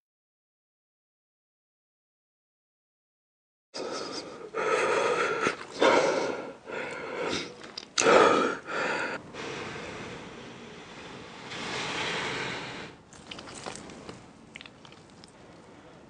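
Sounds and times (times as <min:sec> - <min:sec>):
food rustling and scraping: 0:10.5 - 0:15.5.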